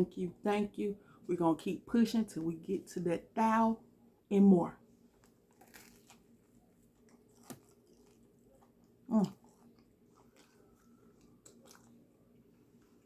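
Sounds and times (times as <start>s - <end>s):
person chewing food: 5.2s - 13.0s.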